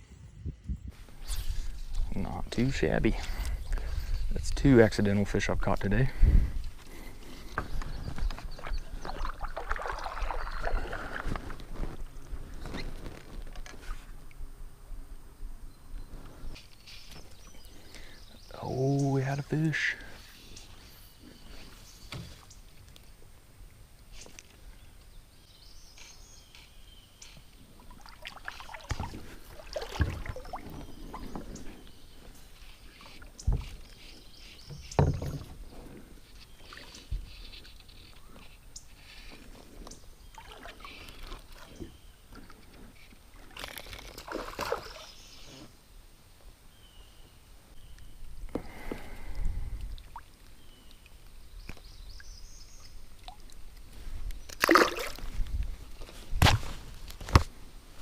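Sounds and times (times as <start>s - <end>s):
water sloshing: 6.7s - 14.0s, 27.8s - 38.6s, 40.2s - 45.2s, 52.2s - 57.5s
hollow knocks against kayak hull: 34.7s - 35.6s.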